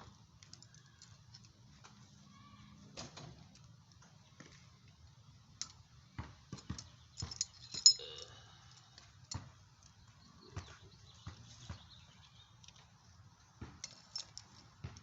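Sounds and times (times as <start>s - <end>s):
metal parts and tools clinking: 6.6s - 9.5s, 13.8s - 14.8s
sharp ringing metal clink: 7.2s - 9.0s.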